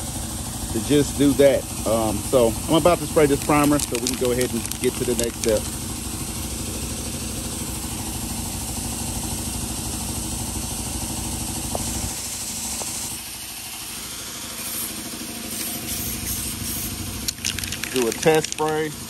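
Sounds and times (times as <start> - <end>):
air compressor throbbing: 0.0 - 19.0
steady hiss: 14.1 - 19.0.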